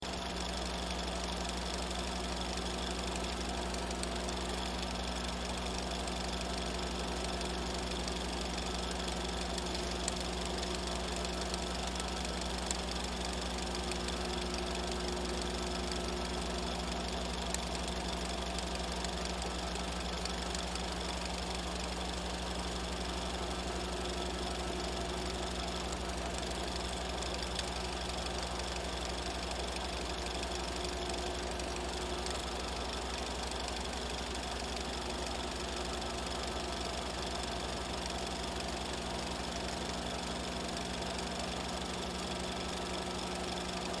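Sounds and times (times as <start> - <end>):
film projector clattering: 0.0 - 44.0.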